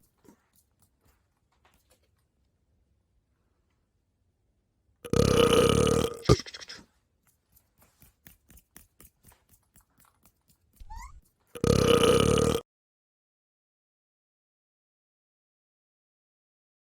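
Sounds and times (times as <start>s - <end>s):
loud drawn-out burp: 5.0s - 6.4s, 11.6s - 12.6s.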